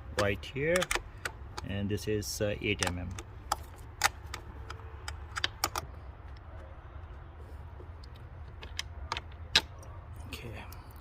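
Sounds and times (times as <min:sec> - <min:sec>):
hand tool clicking on metal: 0:00.1 - 0:01.7, 0:02.7 - 0:05.8.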